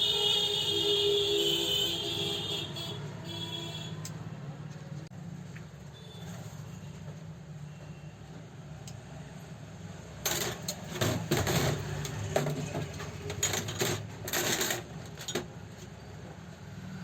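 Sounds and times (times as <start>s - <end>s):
metal tools clinking and rattling: 10.3s - 15.5s.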